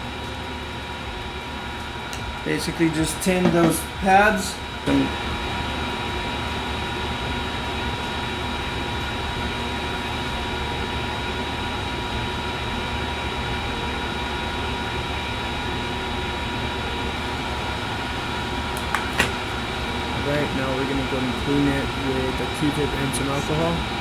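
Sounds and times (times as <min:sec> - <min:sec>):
fan whir: 0:00.0 - 0:24.0.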